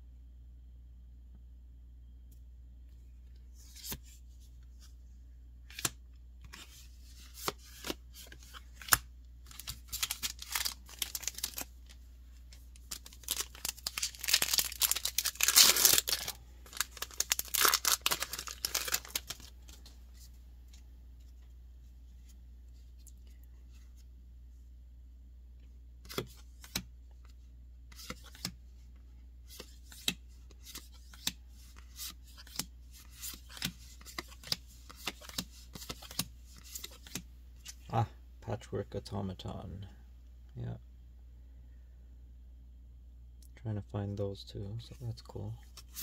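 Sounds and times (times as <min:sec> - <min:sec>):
foil wrapper crinkling and tearing: 0:09.5 - 0:11.7, 0:12.8 - 0:19.5.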